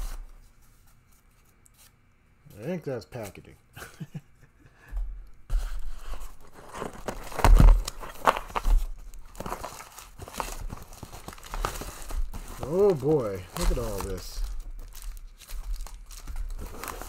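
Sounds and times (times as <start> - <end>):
packing material rustling: 5.5 - 17.0
box handling bumps: 5.6 - 14.3.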